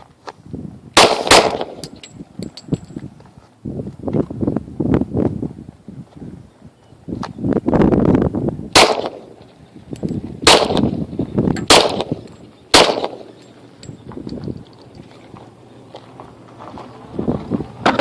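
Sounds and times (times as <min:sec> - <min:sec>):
pistol shots with echo: 0:01.0 - 0:02.0, 0:08.7 - 0:09.4, 0:10.4 - 0:11.0, 0:11.6 - 0:13.5.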